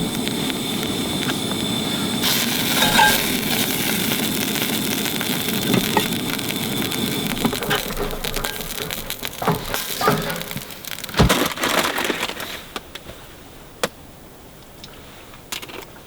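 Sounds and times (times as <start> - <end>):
quesadillas sizzling in a pan: 0.0 - 12.7
light clinks: 2.8 - 3.4.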